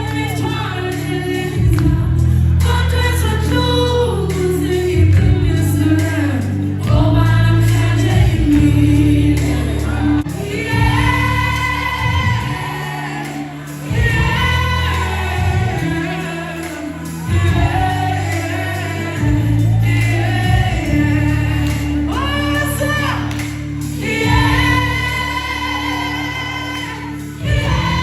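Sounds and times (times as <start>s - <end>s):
low bass accompaniment: 0.0s - 28.0s
choir singing long held notes: 7.5s - 28.0s.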